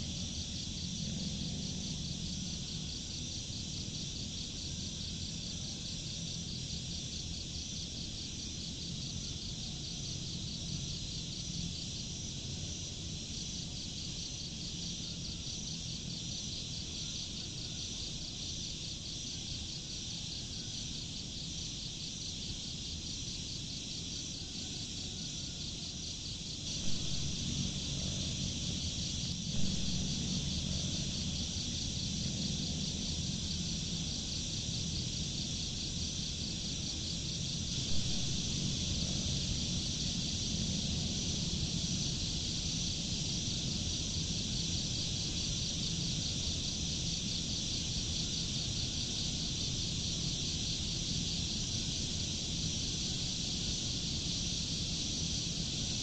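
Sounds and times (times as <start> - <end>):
insects chirping: 0.0 - 56.0
low outdoor rumble: 26.5 - 46.8.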